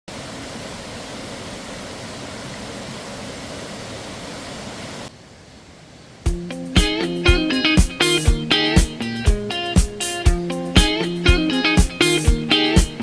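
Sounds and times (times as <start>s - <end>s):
stream rushing: 0.1s - 6.2s
guitar music with a beat: 6.3s - 13.0s.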